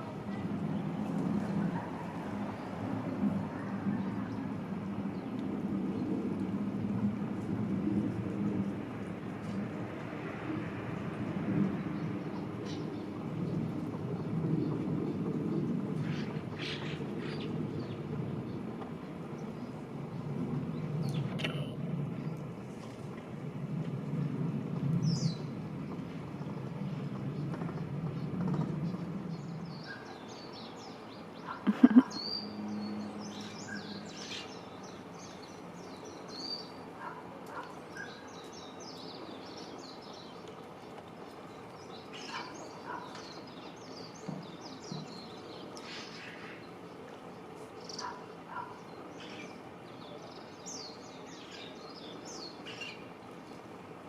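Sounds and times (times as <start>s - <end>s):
small birds chirping: 26.4s - 53.6s.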